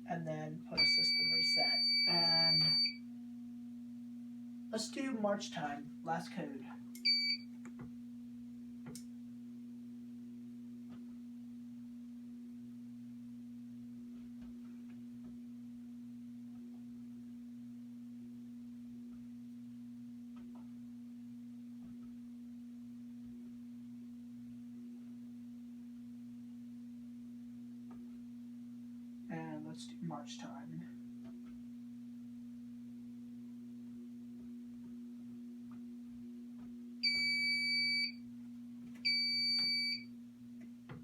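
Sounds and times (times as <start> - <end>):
low electrical hum: 0.0 - 41.0
fire alarm panel beep: 0.8 - 3.0, 7.0 - 7.5, 37.0 - 38.2, 39.0 - 40.1.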